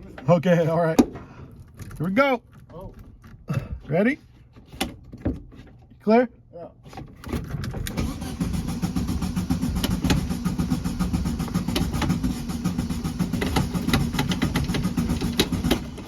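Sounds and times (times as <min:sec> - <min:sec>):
engine cranking on starter motor: 0:07.8 - 0:16.0.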